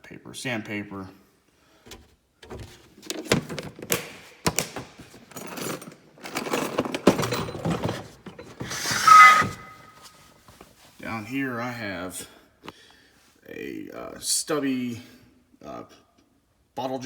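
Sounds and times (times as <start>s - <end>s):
tools clattering inside drawer: 2.4s - 10.1s
metal drawers opening and shutting: 2.5s - 10.0s
drawer rolling on slides: 5.3s - 10.2s.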